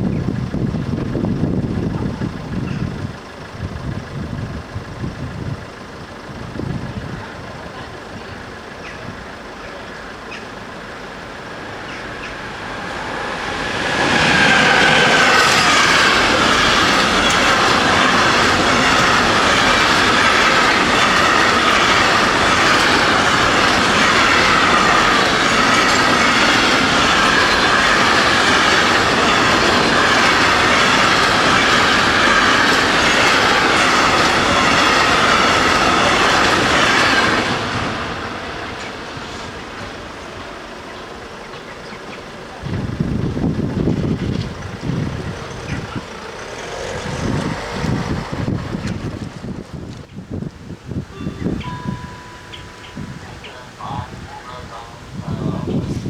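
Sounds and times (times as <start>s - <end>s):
train passing on rails: 0.0s - 56.0s
high wheel tones: 0.2s - 54.3s.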